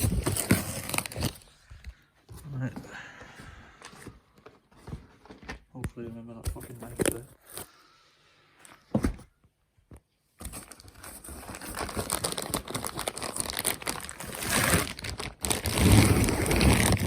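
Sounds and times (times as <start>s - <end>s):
packaging crinkling and tearing: 0.0s - 1.5s, 10.4s - 17.0s.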